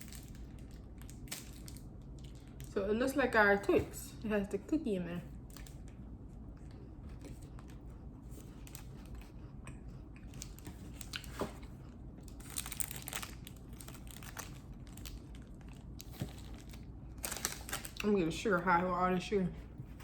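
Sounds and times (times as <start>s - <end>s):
chewing crunchy cookie: 5.4s - 18.1s.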